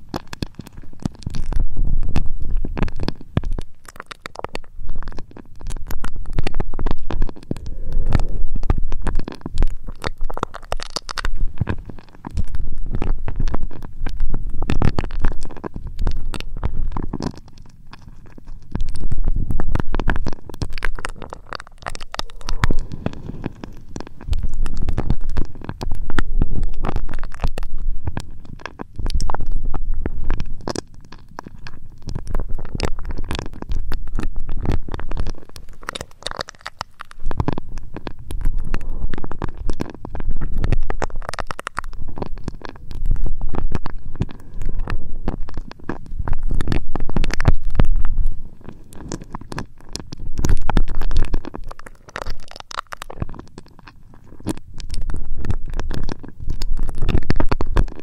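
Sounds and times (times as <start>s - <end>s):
rubbing on microphone: 0.3s - 30.7s.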